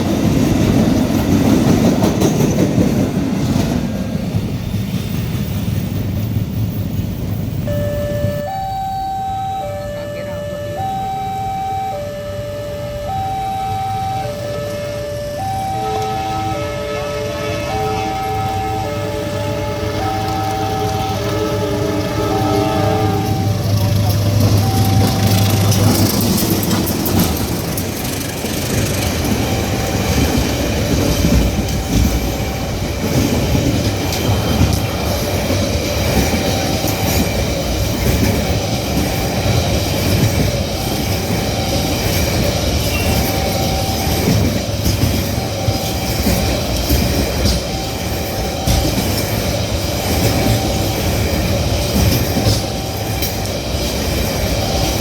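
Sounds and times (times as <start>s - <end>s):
wheels rumbling on rails: 0.0s - 55.0s
faint short beep: 7.6s - 16.8s, 24.6s - 25.4s.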